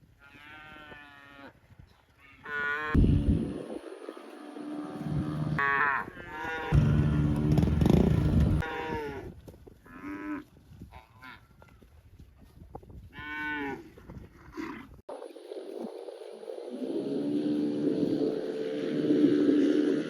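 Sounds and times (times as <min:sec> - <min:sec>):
steady windy noise: 0:03.0 - 0:05.6, 0:13.9 - 0:20.0
cattle mooing: 0:04.4 - 0:09.2.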